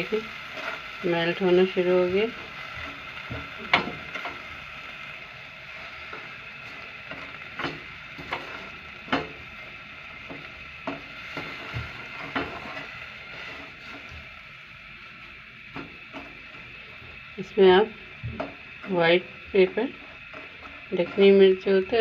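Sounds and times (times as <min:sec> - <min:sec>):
steady hiss: 0:00.0 - 0:22.0
spoon scraping a pan: 0:06.1 - 0:09.4, 0:10.2 - 0:14.2, 0:19.9 - 0:22.0.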